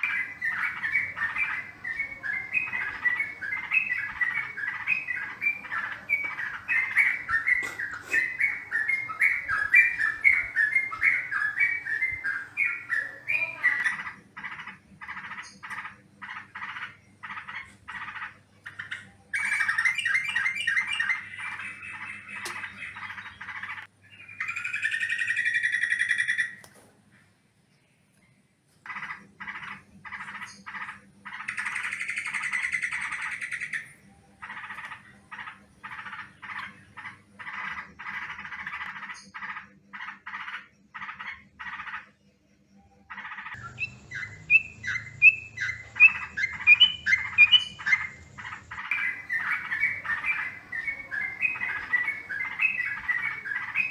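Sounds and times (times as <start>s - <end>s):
bulbul chattering calls: 0.0s - 26.4s, 28.9s - 42.1s, 43.1s - 53.9s
faint low hum: 42.6s - 53.9s.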